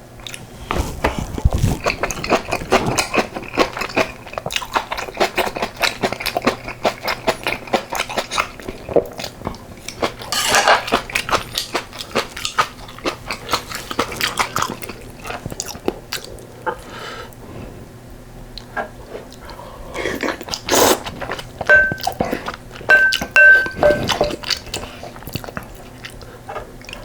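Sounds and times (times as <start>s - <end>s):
wet chewing and mouth clicks: 0.2s - 16.8s, 20.2s - 27.0s
utensil clinking against bowl: 10.3s - 10.9s, 21.7s - 24.6s.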